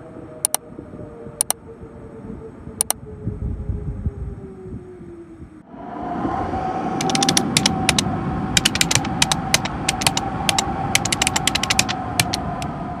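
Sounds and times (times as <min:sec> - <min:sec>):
storm wind and rain rushing: 0:05.7 - 0:13.0
sharp ticks and taps: 0:07.0 - 0:08.0, 0:08.6 - 0:12.7.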